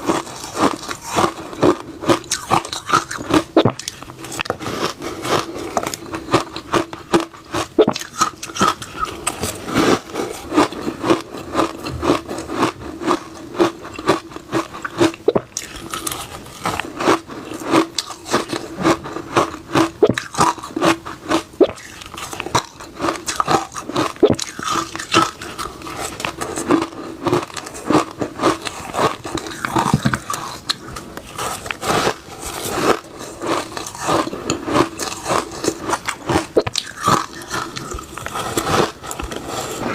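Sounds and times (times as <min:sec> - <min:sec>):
ice being chewed: 0:00.0 - 0:39.9.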